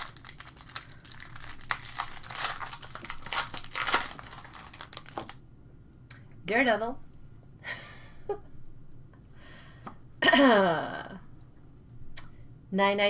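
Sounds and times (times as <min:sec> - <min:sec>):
wrapper tearing and crinkling: 0:00.0 - 0:05.4.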